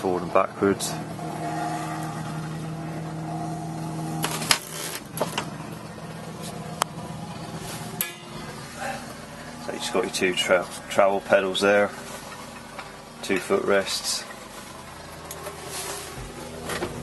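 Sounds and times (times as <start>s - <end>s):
mechanical hum: 0.0s - 17.0s
sharp clunk: 8.0s - 8.4s.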